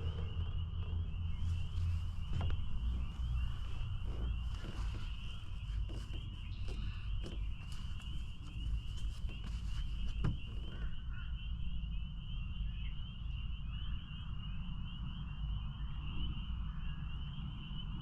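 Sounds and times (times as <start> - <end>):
low rumble: 0.0 - 12.3
spring peepers chorus: 0.0 - 18.0.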